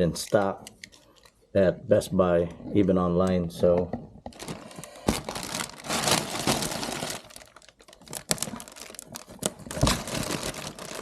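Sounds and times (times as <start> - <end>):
packaging rustling and crinkling: 4.3 - 11.0.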